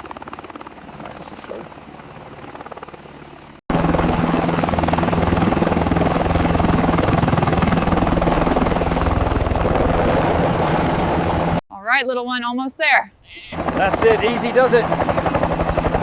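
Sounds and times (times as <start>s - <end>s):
constant low hum: 3.7s - 11.6s
fluttering mechanical drone: 3.7s - 11.6s.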